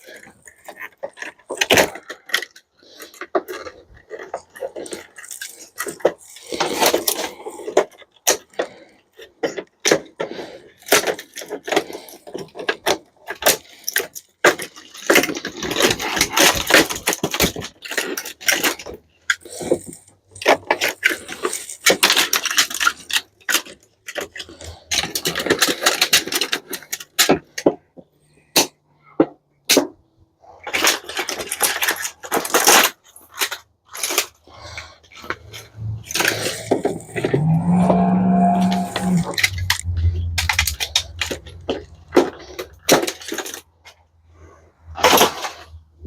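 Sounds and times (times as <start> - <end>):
metal parts clinking and rattling: 0.0 - 28.7, 30.6 - 37.9, 38.6 - 44.1
metal scraping: 35.2 - 43.6.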